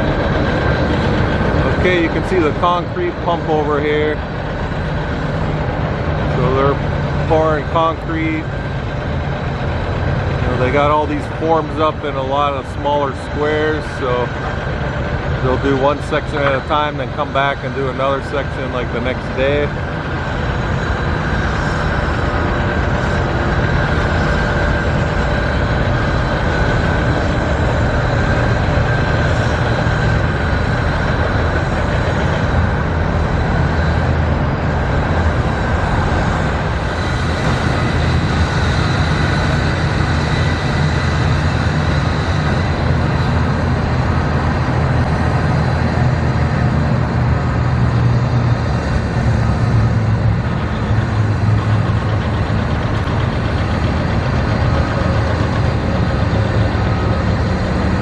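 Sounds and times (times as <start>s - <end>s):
diesel engines rumbling: 0.0s - 58.0s.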